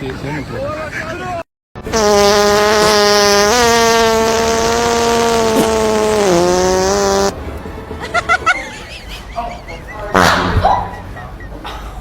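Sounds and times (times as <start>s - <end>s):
buzzing fart sound effect: 1.9s - 7.3s.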